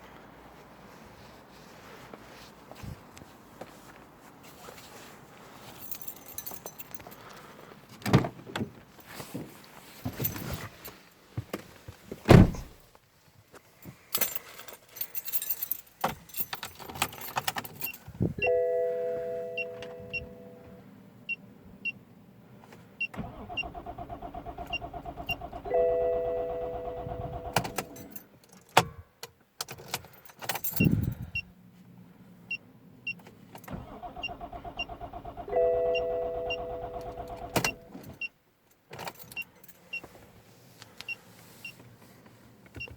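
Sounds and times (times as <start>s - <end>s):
keys and handling knocks: 5.8s - 7.3s, 13.8s - 18.1s
dashboard warning tones: 17.9s - 20.8s, 24.6s - 28.1s, 33.8s - 38.3s
car starter cranking engine: 23.2s - 28.1s, 33.6s - 38.0s.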